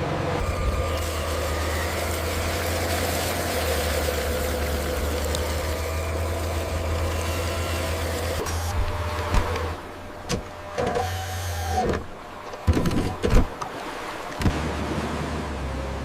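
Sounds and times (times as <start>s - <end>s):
machine engine humming: 0.0s - 12.7s.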